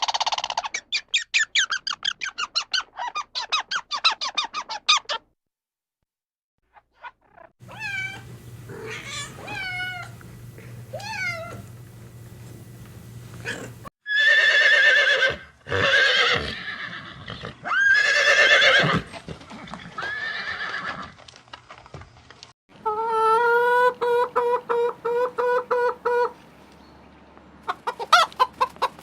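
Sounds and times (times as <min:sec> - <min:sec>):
low hum: 0:07.6 - 0:13.9
horse whinnying: 0:13.4 - 0:19.1, 0:19.8 - 0:21.2.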